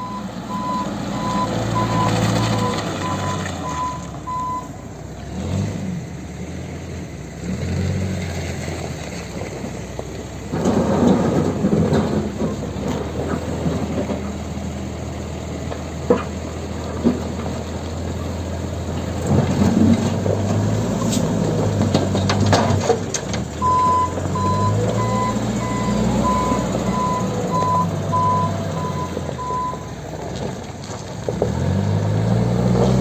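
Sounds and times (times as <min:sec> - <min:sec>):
reversing alarm beeping: 0:00.0 - 0:04.8, 0:23.6 - 0:29.9
diesel engine revving: 0:00.0 - 0:33.0
dirt dumped into truck bed: 0:10.5 - 0:14.4.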